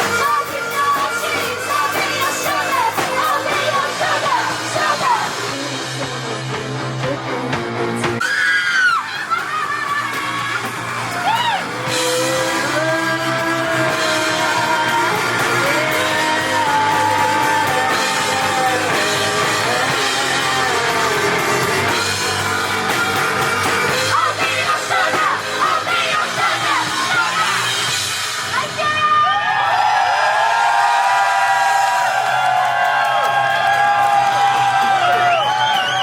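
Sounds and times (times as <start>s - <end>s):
person singing: 0.0s - 7.9s, 11.2s - 22.3s
loud guitars and drums: 0.0s - 36.0s.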